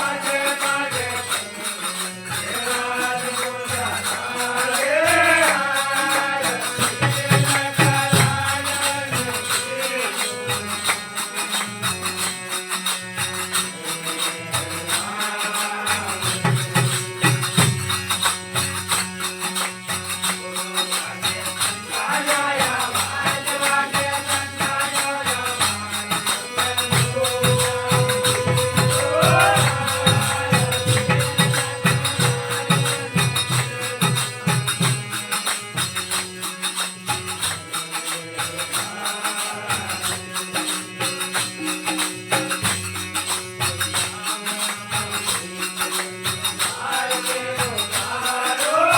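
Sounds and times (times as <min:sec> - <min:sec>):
fast jingling percussion: 0:00.0 - 0:48.9
devotional melody: 0:18.2 - 0:48.9.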